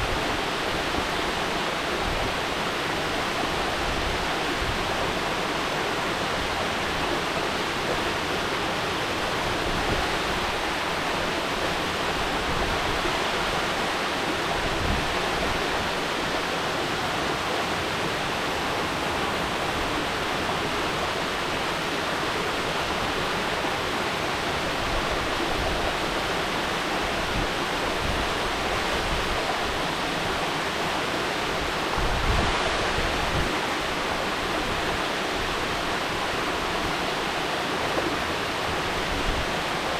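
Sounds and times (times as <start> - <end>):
waterfall roaring: 0.0 - 39.9.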